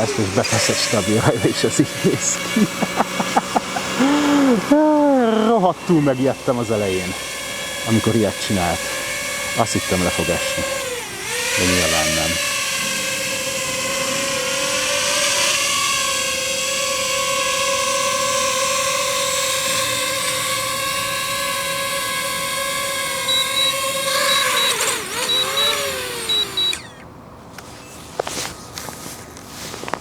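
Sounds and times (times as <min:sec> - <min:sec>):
drone propellers whining: 0:00.0 - 0:28.6
short beeps: 0:23.3 - 0:26.8.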